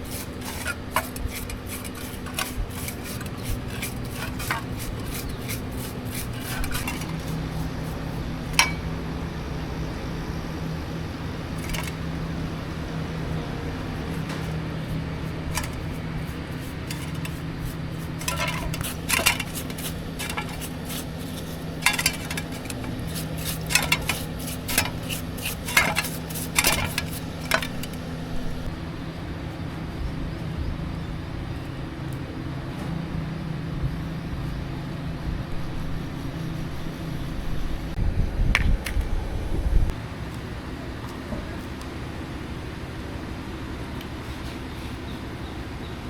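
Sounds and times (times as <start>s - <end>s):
low machine hum: 0.0s - 44.0s
metal parts clinking: 0.1s - 7.7s, 11.6s - 12.0s, 15.2s - 28.0s.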